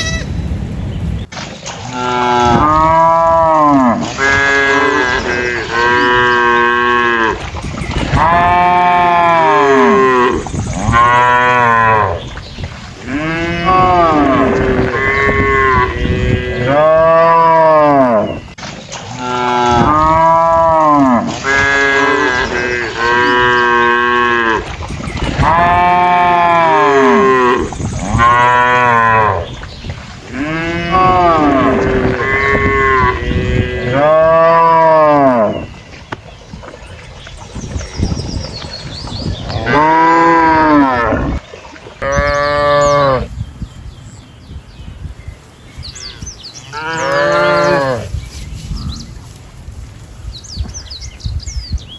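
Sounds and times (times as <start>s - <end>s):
cattle mooing: 1.8s - 7.4s, 8.1s - 12.2s, 13.0s - 18.3s, 19.2s - 24.7s, 25.3s - 29.4s, 30.3s - 35.6s, 39.5s - 41.4s, 42.0s - 43.3s, 46.7s - 48.1s.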